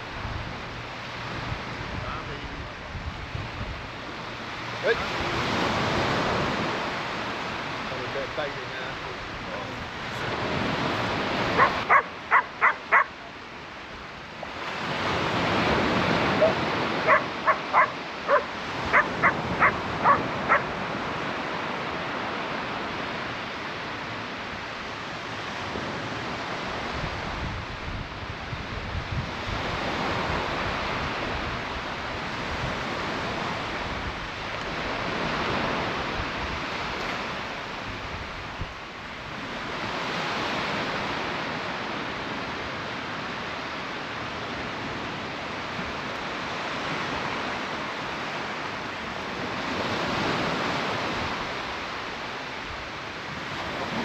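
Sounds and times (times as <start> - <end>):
surf breaking on beach: 0.0 - 54.0
dog barking: 11.5 - 13.2, 16.3 - 20.7.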